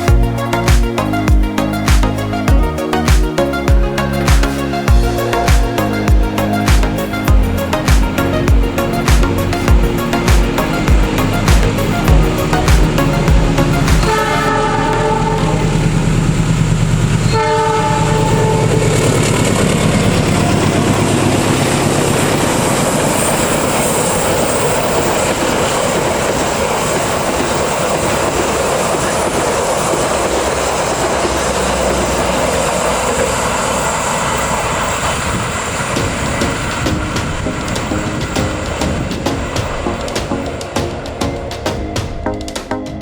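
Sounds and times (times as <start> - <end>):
locomotive engine drone: 0.0 - 43.0
train wheels clattering: 0.0 - 43.0
diesel locomotive horn: 4.8 - 25.7.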